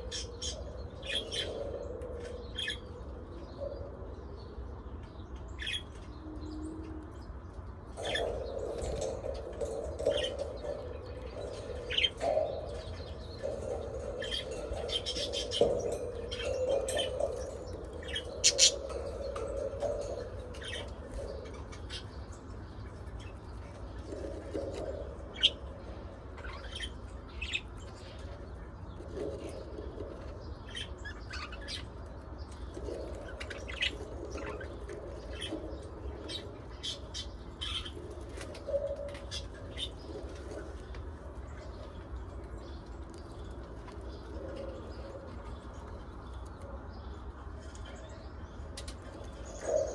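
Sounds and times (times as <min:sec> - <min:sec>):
birds chirping: 0:00.0 - 0:49.9
bird warbling: 0:08.0 - 0:22.2.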